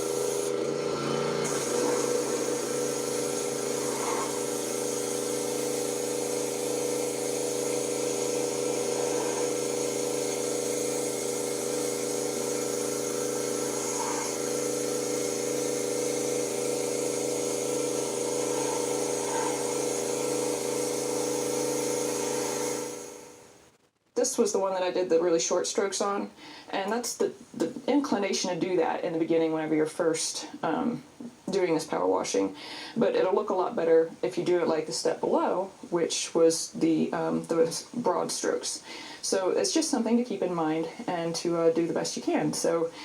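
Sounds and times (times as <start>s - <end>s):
high-pressure water spray hissing: 0.0s - 23.2s
pressure washer motor humming: 0.0s - 23.6s.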